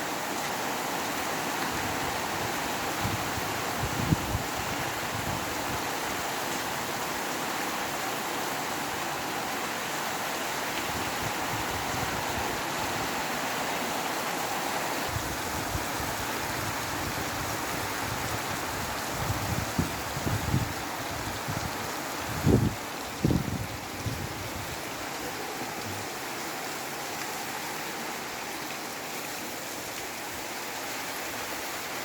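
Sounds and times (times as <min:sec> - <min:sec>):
steady rain falling: 0:00.0 - 0:32.0
wind gusts rumbling: 0:15.1 - 0:26.3.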